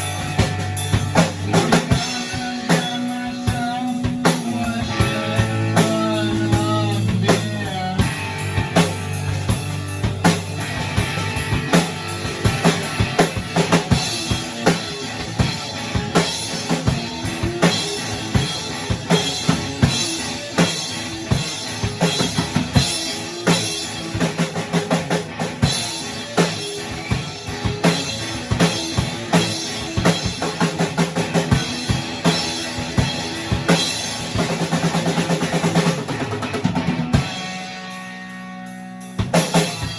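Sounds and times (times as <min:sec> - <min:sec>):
rock drum kit playing: 0:00.0 - 0:39.9.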